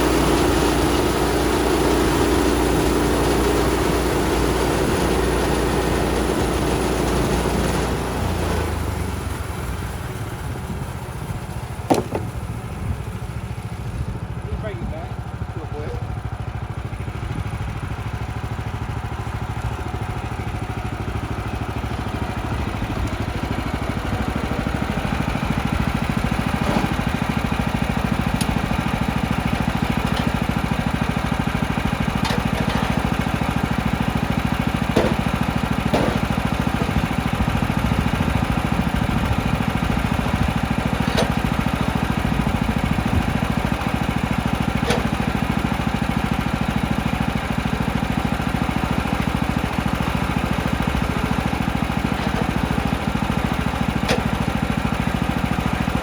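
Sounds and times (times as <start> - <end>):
small gasoline engine running: 0.0 - 56.0
faint knocks: 11.9 - 12.4.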